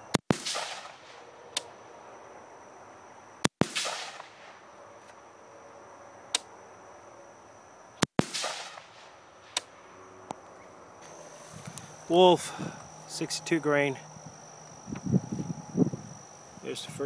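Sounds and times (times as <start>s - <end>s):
rifle shots with echo: 0.1s - 1.3s, 3.6s - 4.6s, 8.1s - 9.7s.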